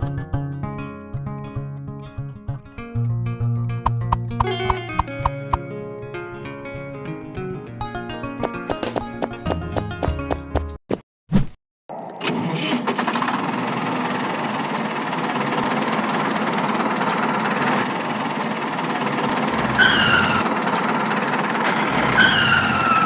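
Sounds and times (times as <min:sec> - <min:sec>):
mini tractor engine running: 0:12.2 - 0:23.0
short falling squeals: 0:19.6 - 0:20.5, 0:22.1 - 0:23.0.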